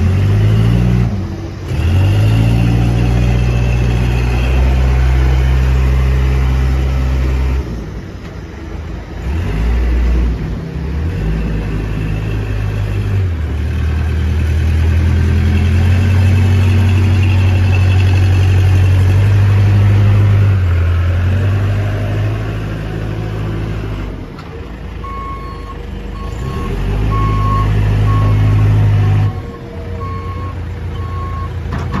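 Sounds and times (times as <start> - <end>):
diesel engine revving: 0.0 - 32.0.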